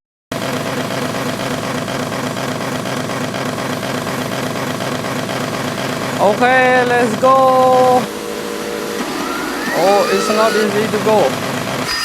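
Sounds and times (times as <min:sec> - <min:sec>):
remote-control truck droning: 0:03.9 - 0:12.0.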